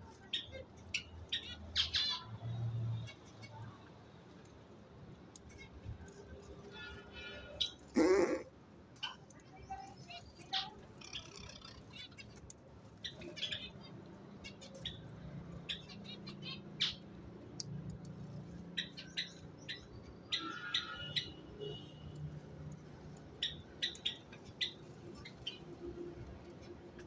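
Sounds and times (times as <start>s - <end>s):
budgerigar warbling chatter: 8.0s - 8.5s.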